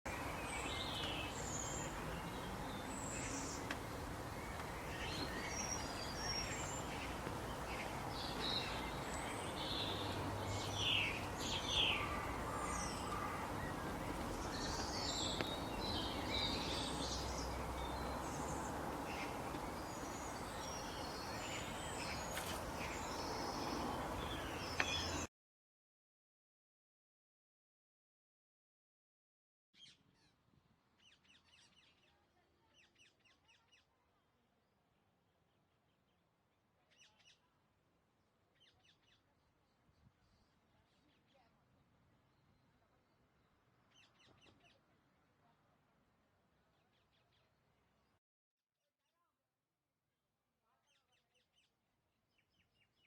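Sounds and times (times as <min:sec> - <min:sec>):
birds chirping: 0:00.1 - 0:25.3.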